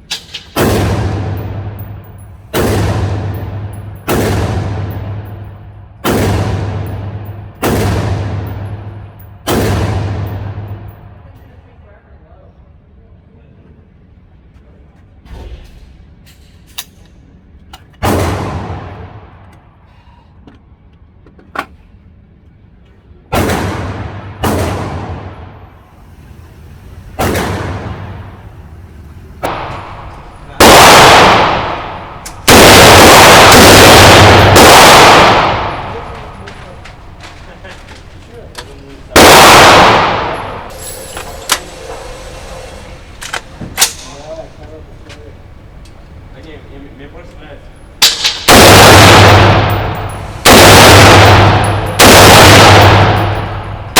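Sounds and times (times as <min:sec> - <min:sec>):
rifle shots echoing: 0:02.5 - 0:05.2, 0:06.0 - 0:10.9, 0:29.4 - 0:41.0, 0:48.0 - 0:53.9
faint gunshots: 0:29.4 - 0:40.9, 0:48.0 - 0:53.9
faint sharp cracks: 0:29.4 - 0:41.7.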